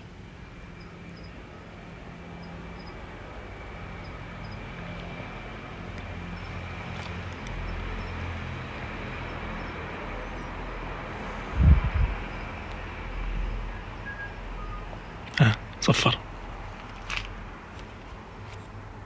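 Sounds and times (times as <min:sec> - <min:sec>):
wind rumbling on microphone: 0:10.8 - 0:13.7.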